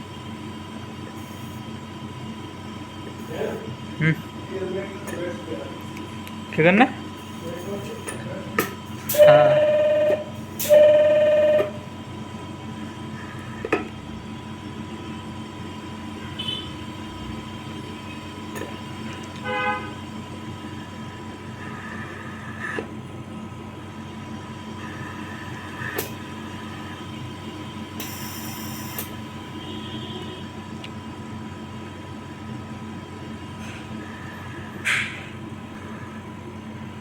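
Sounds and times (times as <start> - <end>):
steady machine hum: 0.0 - 37.0
faint short beeps: 9.1 - 11.7
loud machine beep: 9.1 - 12.0.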